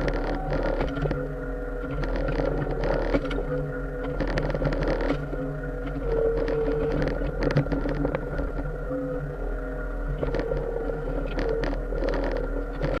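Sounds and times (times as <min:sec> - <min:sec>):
mini excavator running: 0:00.0 - 0:08.7
hydraulic whine: 0:00.0 - 0:13.0.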